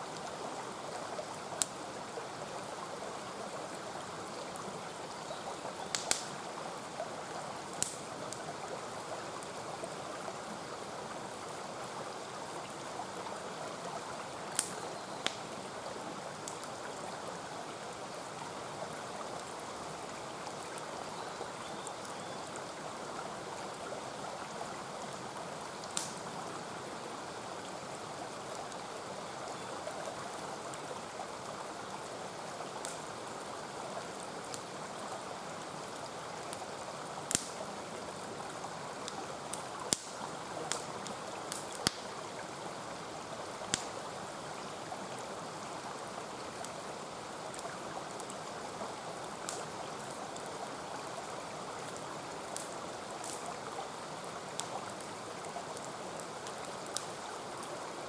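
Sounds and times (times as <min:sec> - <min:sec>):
mountain stream flowing: 0:00.0 - 0:58.0
campfire crackling pops: 0:05.8 - 0:06.4, 0:07.7 - 0:08.4, 0:14.5 - 0:15.5, 0:16.4 - 0:16.7, 0:25.8 - 0:26.3, 0:32.8 - 0:33.1, 0:36.5 - 0:37.7, 0:39.0 - 0:42.2, 0:43.7 - 0:44.0, 0:49.4 - 0:50.2, 0:52.5 - 0:53.5, 0:54.6 - 0:55.0, 0:56.2 - 0:57.2.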